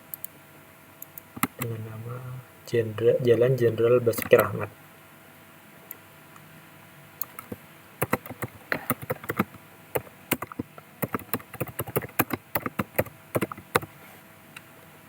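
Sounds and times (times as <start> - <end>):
computer keyboard typing: 4.1 - 4.6, 7.2 - 14.0.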